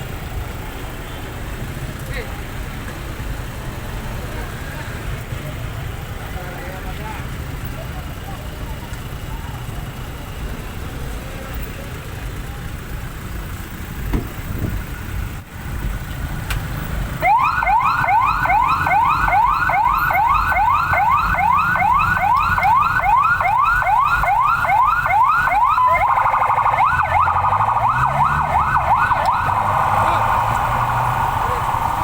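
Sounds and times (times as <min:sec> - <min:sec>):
engine and traffic noise: 0:00.0 - 0:32.0
emergency vehicle siren: 0:16.7 - 0:32.0.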